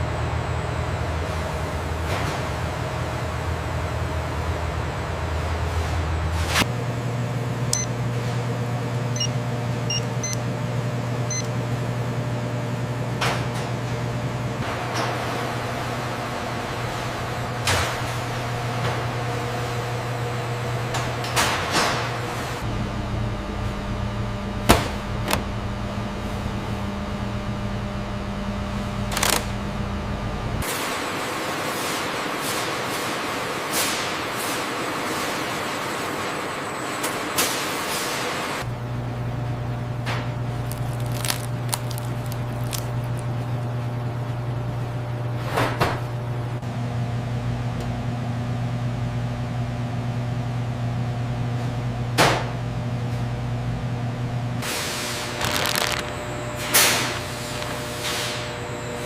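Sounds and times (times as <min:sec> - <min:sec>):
machinery humming and hissing: 0:00.0 - 0:48.7, 0:52.9 - 0:59.0.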